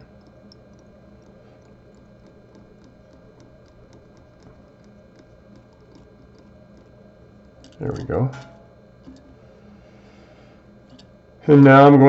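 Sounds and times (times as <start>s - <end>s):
thread wrapping ticks: 0.0s - 7.8s
low steady hum: 0.0s - 12.0s.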